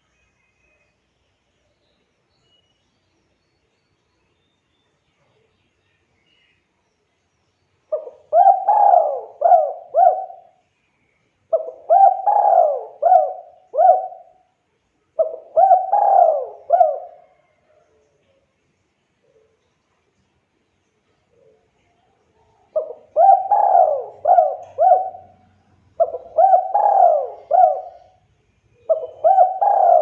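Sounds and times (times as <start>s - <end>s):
dove cooing: 7.9s - 10.6s, 11.5s - 14.4s, 15.2s - 17.6s, 22.7s - 28.2s, 28.8s - 30.0s.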